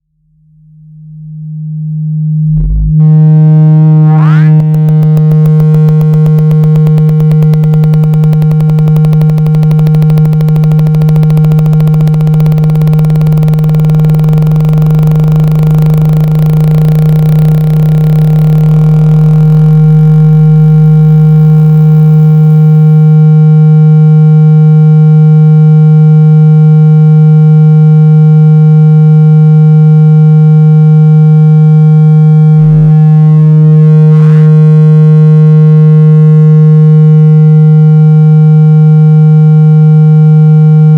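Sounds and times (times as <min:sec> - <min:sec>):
loud low buzzing tone: 0:02.5 - 0:23.5.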